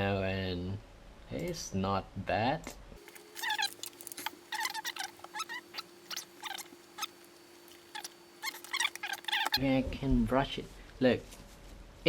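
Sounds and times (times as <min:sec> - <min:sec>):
faint steady hum: 0:03.0 - 0:12.0.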